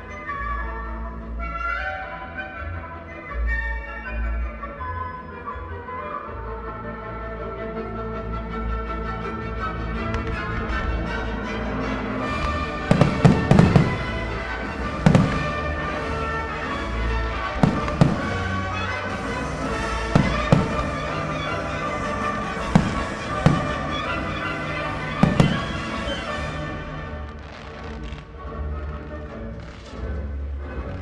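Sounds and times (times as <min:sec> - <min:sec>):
music soundtrack: 0:00.0 - 0:31.0
fireworks bursting in sharp bangs: 0:12.4 - 0:28.3.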